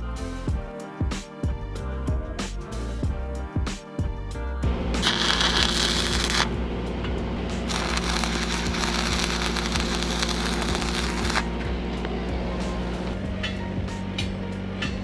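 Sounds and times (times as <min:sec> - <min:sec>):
welding arc crackling: 0:05.0 - 0:06.6, 0:07.5 - 0:11.6, 0:12.8 - 0:13.2.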